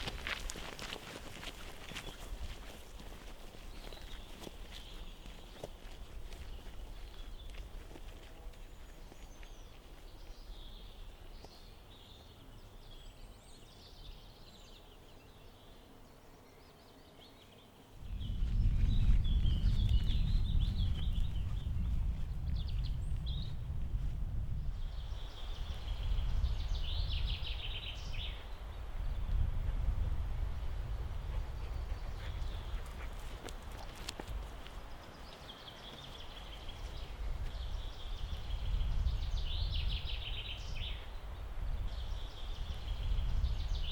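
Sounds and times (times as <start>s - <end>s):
wind buffeting microphone: 0.0s - 9.7s, 18.0s - 35.2s, 36.3s - 43.9s
songbirds chirping and trilling: 0.0s - 23.8s, 31.3s - 43.9s.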